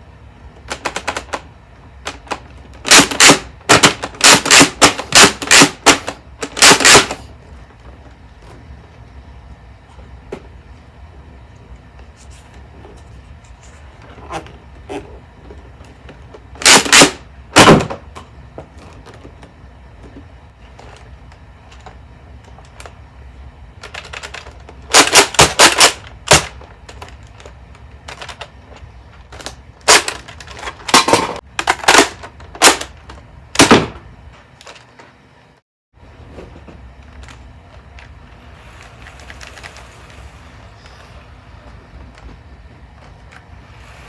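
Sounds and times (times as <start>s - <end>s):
plastic clacks of toy blasters: 0.6s - 7.3s, 16.6s - 19.2s, 23.8s - 34.0s.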